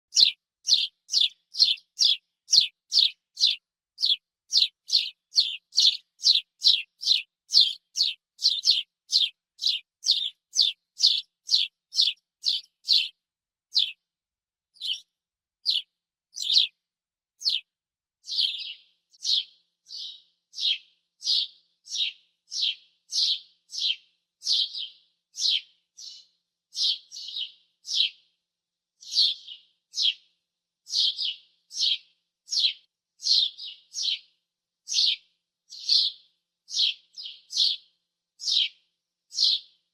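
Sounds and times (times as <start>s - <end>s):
sparrow cheeping: 0.1s - 14.0s, 14.8s - 16.8s, 17.4s - 24.8s.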